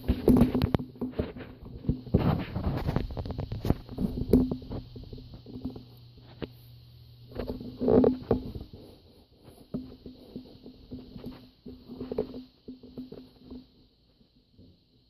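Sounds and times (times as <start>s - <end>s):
rats chewing and crunching food: 0.0s - 15.0s.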